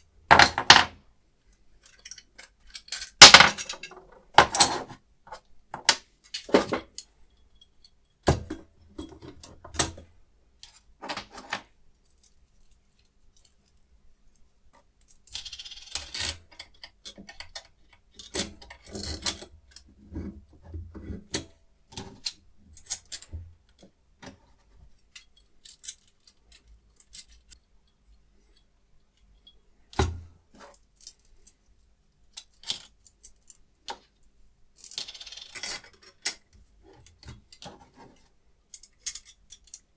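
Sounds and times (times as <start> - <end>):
small metal parts clicking: 1.5 - 4.1, 10.6 - 19.9, 22.2 - 23.9, 25.0 - 29.6, 30.7 - 34.0, 34.8 - 37.6, 38.7 - 39.9.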